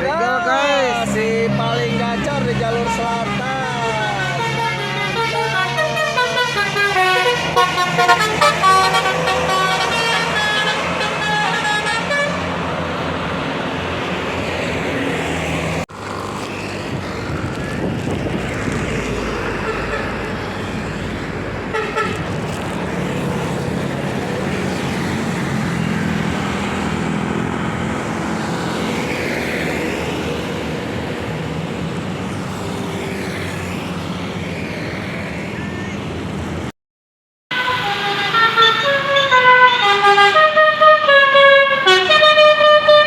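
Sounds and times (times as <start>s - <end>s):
bus engines rumbling: 0.0s - 36.7s, 37.5s - 43.0s
bus horn playing tune: 2.8s - 12.6s, 21.7s - 22.4s, 37.5s - 43.0s.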